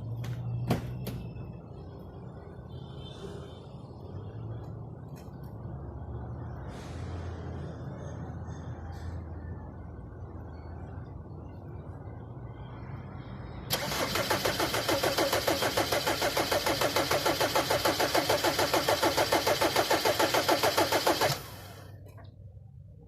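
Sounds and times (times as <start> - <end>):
engine cranking without starting: 13.7 - 21.9.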